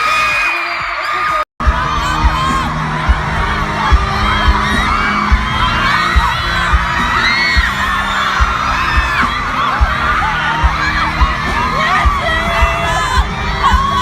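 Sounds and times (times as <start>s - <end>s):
crowd screaming: 0.0s - 14.0s
music with thudding bass beat: 1.6s - 14.0s.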